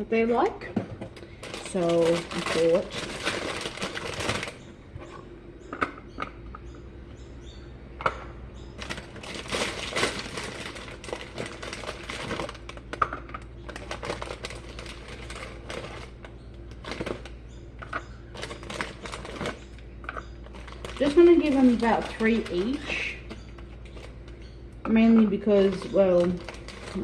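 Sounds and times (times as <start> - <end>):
biscuit packet crinkling: 1.2 - 4.7, 8.8 - 17.4, 18.3 - 24.4, 25.6 - 27.0.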